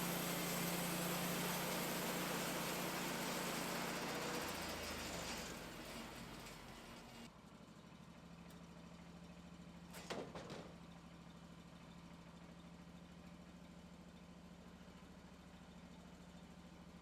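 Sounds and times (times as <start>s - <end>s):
clatter of knocks: 9.9s - 10.8s.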